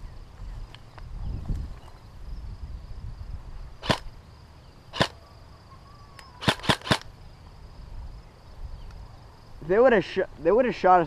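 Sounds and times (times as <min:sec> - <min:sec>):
airsoft rifle shots: 0:03.8 - 0:04.1, 0:04.9 - 0:05.2, 0:06.4 - 0:07.1.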